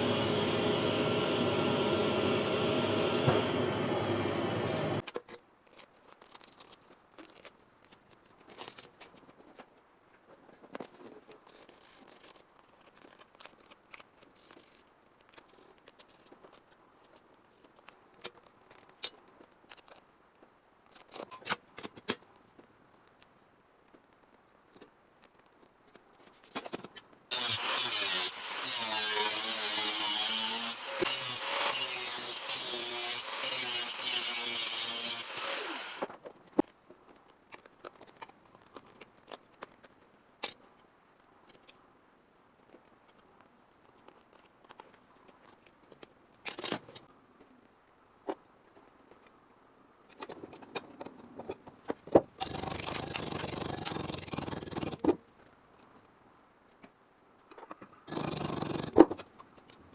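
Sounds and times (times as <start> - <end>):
power tool cutting sheet metal: 0.0 - 5.0, 27.3 - 36.1.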